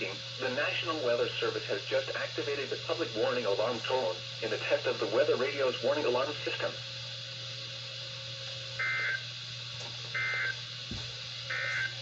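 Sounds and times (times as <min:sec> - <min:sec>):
radio reception hiss: 0:00.0 - 0:07.0, 0:11.4 - 0:12.0
emergency alert data tones: 0:08.8 - 0:09.2, 0:10.2 - 0:10.6, 0:11.5 - 0:12.0.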